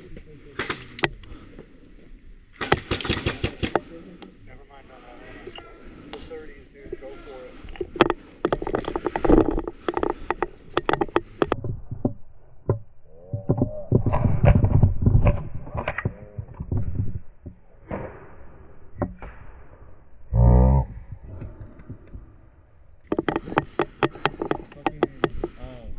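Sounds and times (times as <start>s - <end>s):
airsoft gun shots: 2.6s - 3.8s.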